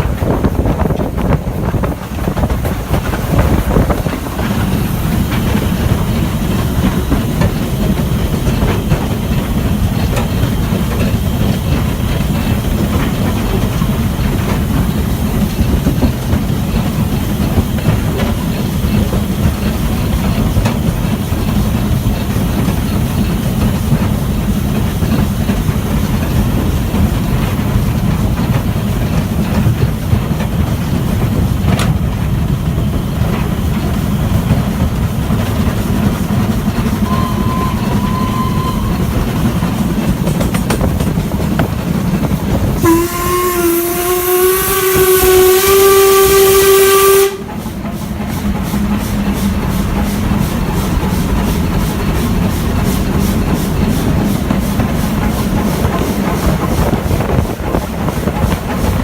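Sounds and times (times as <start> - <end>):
rush of steam: 0.0 - 59.0
train rumbling: 0.0 - 59.0
steam locomotive whistle: 37.0 - 39.9, 42.8 - 47.7.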